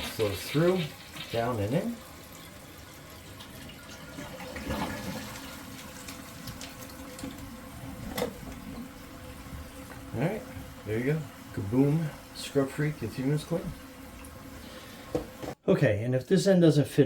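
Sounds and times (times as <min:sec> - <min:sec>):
toilet refilling: 0:00.0 - 0:15.6.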